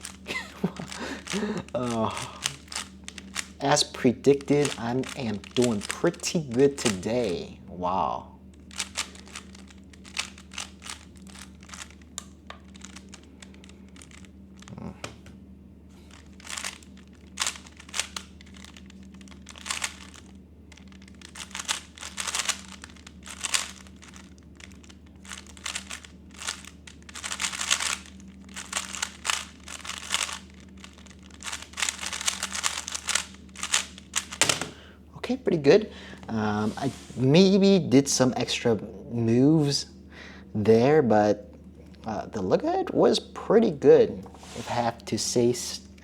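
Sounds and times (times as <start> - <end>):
puzzle cube clicking: 0.0 - 7.4, 8.7 - 15.2, 16.1 - 34.8
steady low hum: 0.0 - 46.0.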